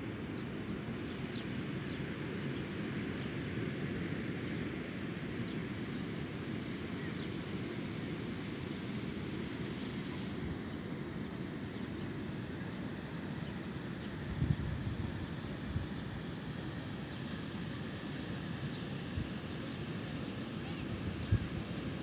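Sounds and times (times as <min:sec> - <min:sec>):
wind noise on microphone: 0:14.3 - 0:15.9, 0:20.9 - 0:21.7.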